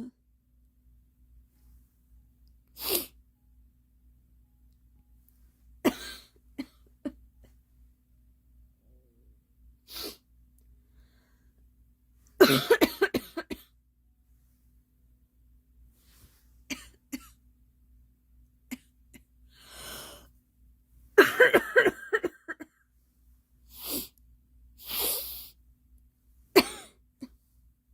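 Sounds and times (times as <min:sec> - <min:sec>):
girl coughing: 0:05.9 - 0:06.8, 0:12.4 - 0:13.7, 0:16.7 - 0:17.3, 0:21.2 - 0:22.7, 0:26.6 - 0:27.0.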